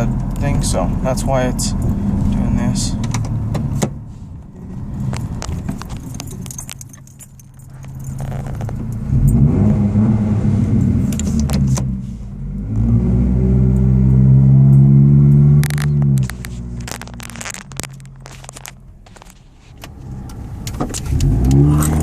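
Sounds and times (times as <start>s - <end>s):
engine and exhaust accelerating: 0.0s - 22.0s
metallic jingling: 5.2s - 8.9s.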